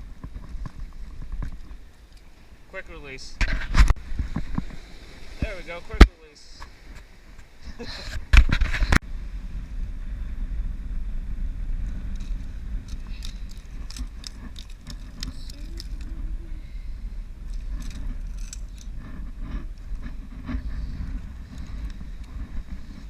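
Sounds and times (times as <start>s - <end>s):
wind rumbling on microphone: 0.0s - 23.0s
microphone handling noise: 3.4s - 6.1s, 8.0s - 9.1s, 11.8s - 23.0s
fishing gear clicking and rattling: 11.9s - 16.4s, 17.3s - 23.0s.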